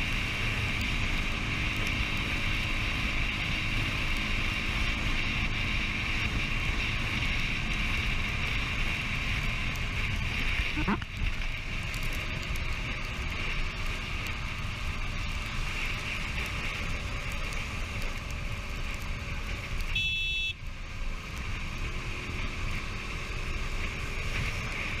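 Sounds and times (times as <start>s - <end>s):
road traffic noise: 0.0s - 25.0s
wind rumble: 0.0s - 25.0s
vehicle horn beep: 19.9s - 20.6s.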